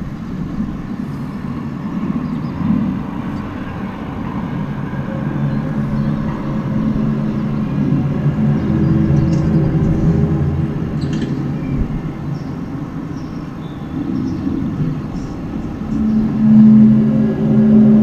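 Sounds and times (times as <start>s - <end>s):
low droning hum: 0.0s - 18.0s.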